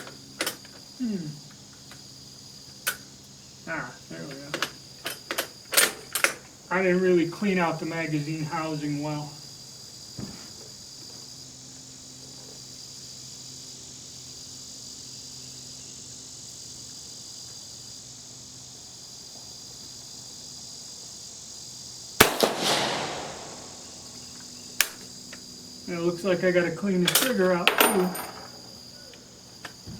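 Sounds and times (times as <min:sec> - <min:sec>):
insects chirring: 0:00.0 - 0:29.9
rifle shot with echo: 0:22.2 - 0:24.3.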